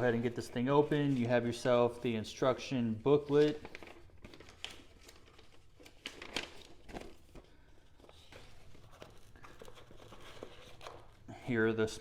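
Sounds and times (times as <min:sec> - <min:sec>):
packaging rustling: 0:03.0 - 0:11.2.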